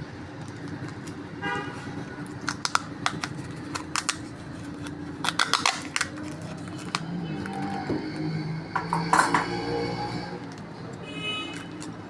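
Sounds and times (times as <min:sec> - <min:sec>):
parts clicking and rustling in hands: 0:00.3 - 0:01.2, 0:02.2 - 0:07.8, 0:10.4 - 0:12.0.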